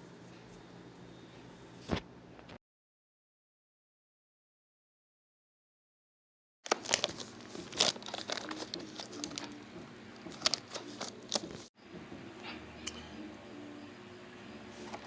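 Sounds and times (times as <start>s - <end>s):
packaging crinkling and tearing: 6.7s - 9.6s, 10.2s - 11.6s.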